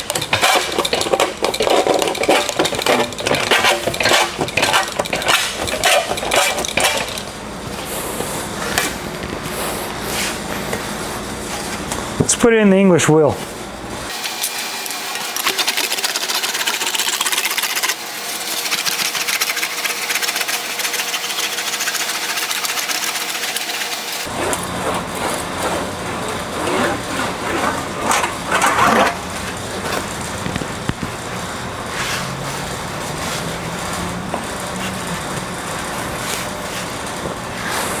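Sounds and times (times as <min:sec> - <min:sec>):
sheet metal rolling rattle: 0:00.0 - 0:07.4, 0:24.3 - 0:37.5.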